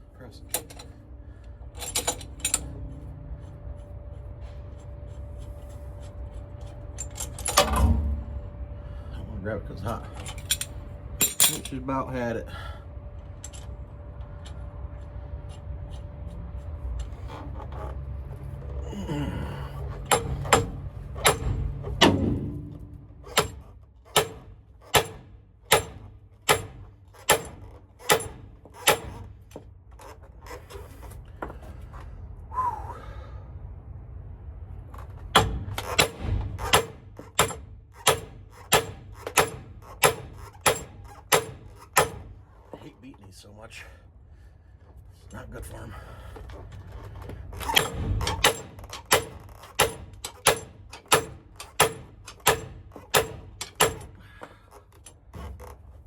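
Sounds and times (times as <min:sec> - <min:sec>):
hammer striking metal: 0:20.1 - 0:29.1, 0:35.4 - 0:42.3, 0:47.8 - 0:54.2.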